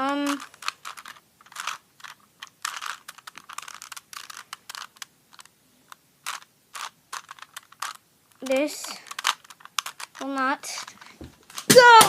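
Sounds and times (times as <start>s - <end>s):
plastic puzzle cube clicking: 0.0s - 12.0s.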